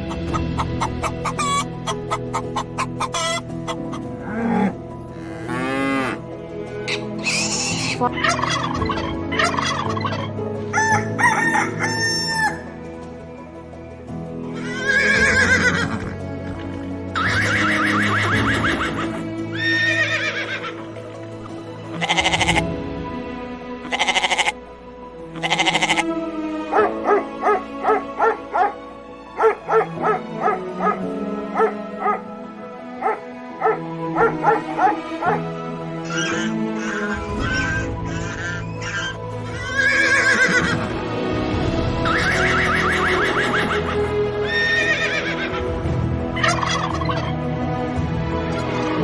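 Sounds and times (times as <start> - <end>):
farm fowl calls: 0.0 - 5.7, 36.0 - 39.2, 46.4 - 47.3
background music: 0.0 - 49.0
rooster crowing: 10.7 - 12.6
sheep bleating: 21.9 - 22.7, 23.8 - 24.6, 25.3 - 26.2.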